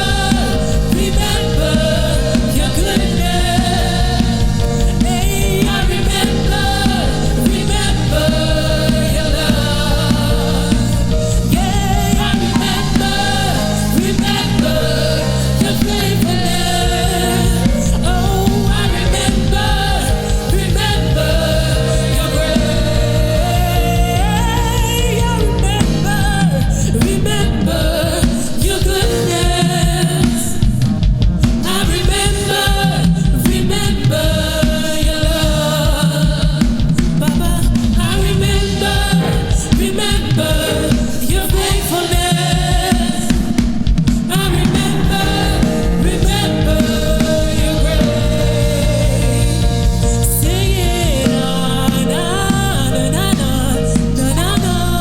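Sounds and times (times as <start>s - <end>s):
gospel singing with band: 0.0s - 55.0s.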